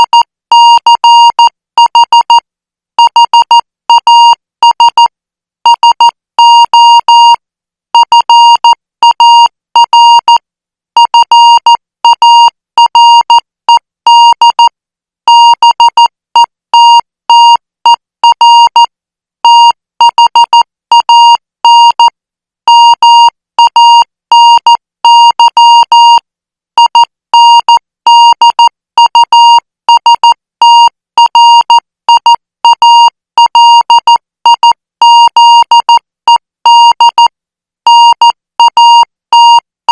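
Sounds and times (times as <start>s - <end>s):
morse code beeps: 0.0s - 1.4s, 8.0s - 10.4s, 11.1s - 13.4s, 15.3s - 16.1s, 18.2s - 18.8s, 19.4s - 22.1s, 22.7s - 26.2s, 26.8s - 36.0s, 37.9s - 39.6s.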